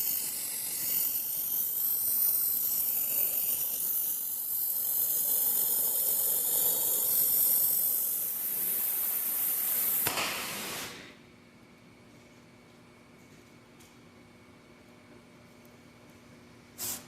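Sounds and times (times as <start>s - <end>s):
welding arc crackling and hissing: 0.0s - 11.2s, 16.8s - 17.0s.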